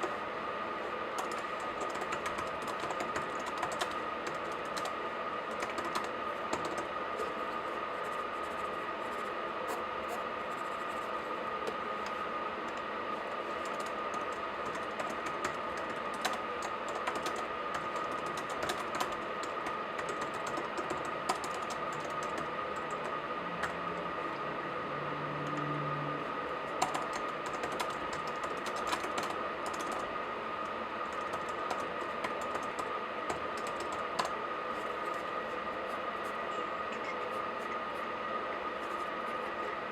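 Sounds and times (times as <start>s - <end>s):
faint high hum: 0.0s - 39.9s.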